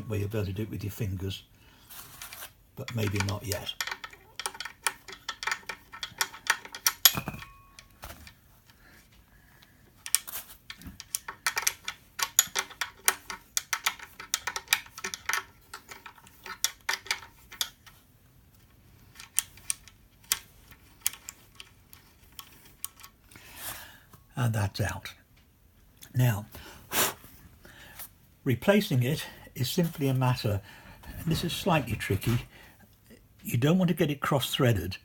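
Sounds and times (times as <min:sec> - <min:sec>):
spanner clicking on metal: 0:02.8 - 0:07.5, 0:10.0 - 0:17.8.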